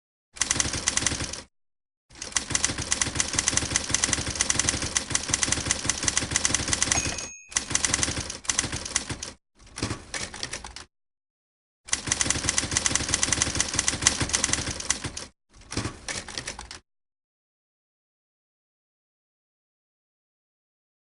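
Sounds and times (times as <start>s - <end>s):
typewriter keystrokes clattering: 2.2s - 10.9s
typewriter bell ringing: 6.7s - 8.3s.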